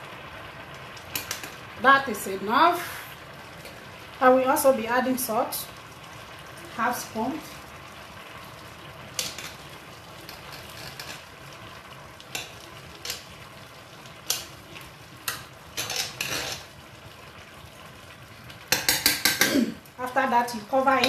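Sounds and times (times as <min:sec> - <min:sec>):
pot simmering hiss: 0:00.0 - 0:21.0
metal clattering on pot: 0:01.1 - 0:01.6, 0:09.2 - 0:09.6, 0:10.2 - 0:11.2, 0:12.3 - 0:13.4, 0:15.2 - 0:16.7, 0:18.7 - 0:19.7
spoon scraping a pot: 0:09.2 - 0:11.3, 0:15.3 - 0:16.7.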